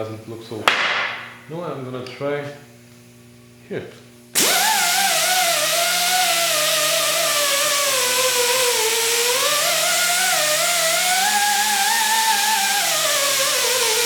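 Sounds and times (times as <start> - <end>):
power tool motor whine: 4.3 - 14.0
polishing wheel hissing on metal: 4.4 - 14.0.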